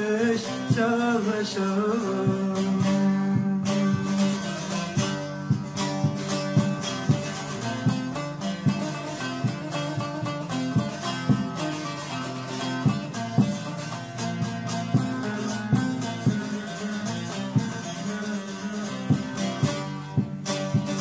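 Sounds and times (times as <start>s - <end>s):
plucked string instrument melody: 0.0s - 21.0s.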